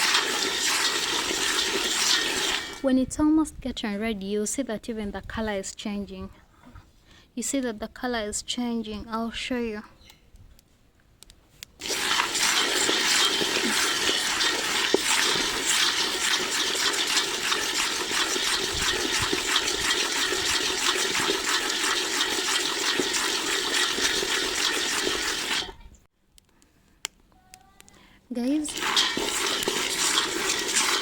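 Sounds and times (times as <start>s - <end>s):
peanuts rattling in a saucepan: 0.0s - 2.8s, 11.8s - 25.7s, 28.5s - 31.0s.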